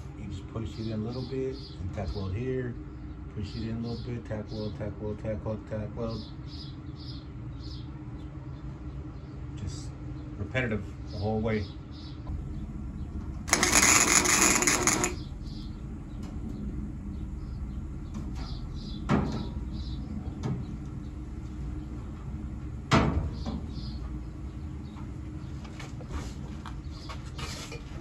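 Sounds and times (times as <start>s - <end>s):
welder crackling: 13.5s - 15.2s.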